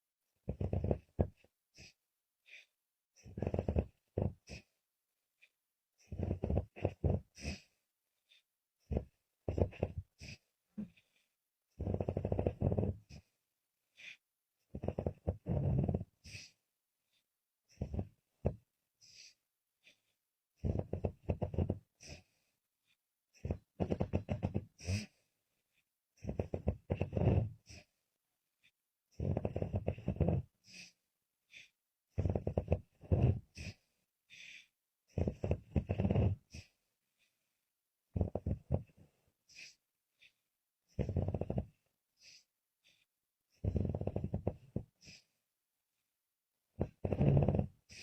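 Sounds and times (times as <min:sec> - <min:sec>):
woman snoring: 0:06.1 - 0:07.7, 0:11.8 - 0:13.2, 0:14.7 - 0:16.4, 0:17.8 - 0:18.6, 0:23.4 - 0:25.1, 0:26.2 - 0:27.7, 0:29.2 - 0:31.0, 0:32.2 - 0:33.6, 0:35.1 - 0:36.6, 0:41.0 - 0:41.7, 0:43.6 - 0:45.3, 0:46.8 - 0:48.0.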